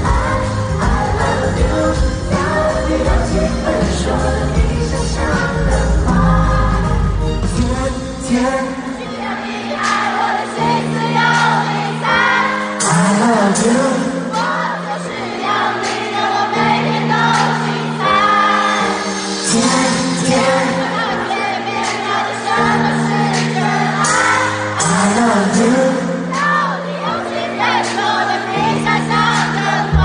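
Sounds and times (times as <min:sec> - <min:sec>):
person singing: 0:00.0 - 0:09.4, 0:12.8 - 0:14.6, 0:19.4 - 0:21.4, 0:24.0 - 0:26.9.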